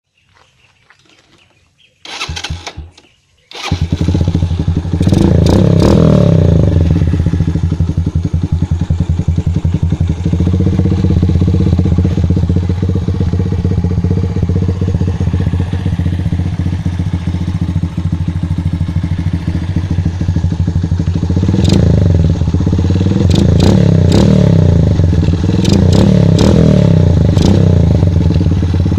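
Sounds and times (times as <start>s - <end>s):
motorcycle engine idling and revving: 0.2s - 28.9s
motorcycle engine cranking: 2.0s - 6.0s.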